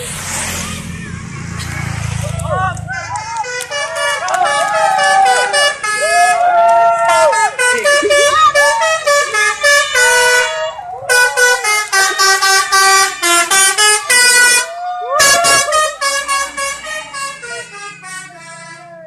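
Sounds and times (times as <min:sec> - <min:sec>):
musical air horns playing tune: 0:07.1 - 0:18.9.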